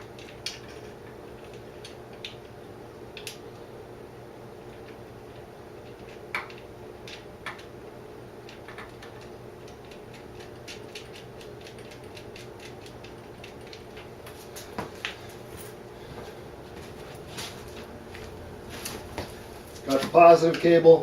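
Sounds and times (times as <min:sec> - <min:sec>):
steady background hum: 0:00.0 - 0:21.0.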